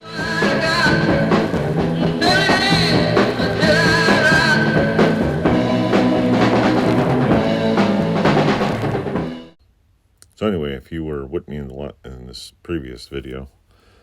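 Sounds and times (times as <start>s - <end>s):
rock song with drums and singing: 0.0s - 9.4s.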